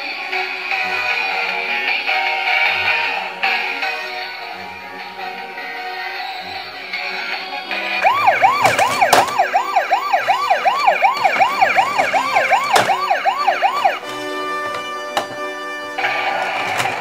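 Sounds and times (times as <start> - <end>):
music: 0.0 - 17.0
electronic siren yelp: 8.0 - 14.2.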